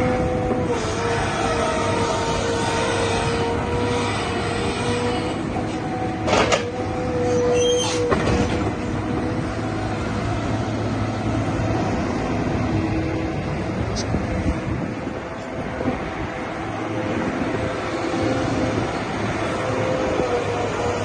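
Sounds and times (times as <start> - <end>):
excavator running: 0.0 - 21.0
metallic squeals: 0.7 - 8.6.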